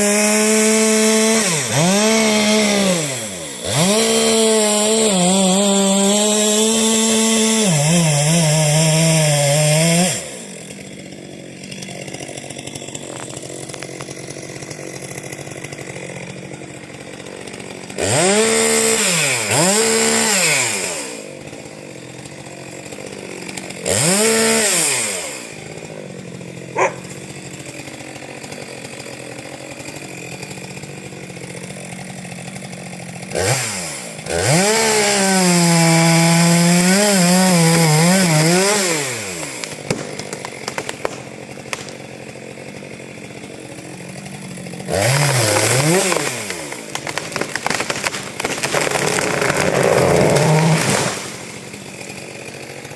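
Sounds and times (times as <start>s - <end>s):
chainsaw engine revving: 0.0s - 52.9s
chain cutting into wood: 26.7s - 27.2s, 44.9s - 51.8s.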